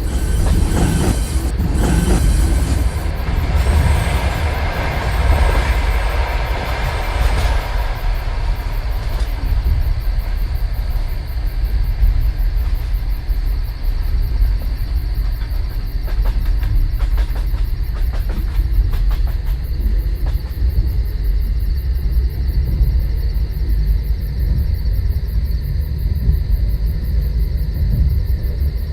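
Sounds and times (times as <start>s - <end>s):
train running low rumble: 0.0s - 28.9s.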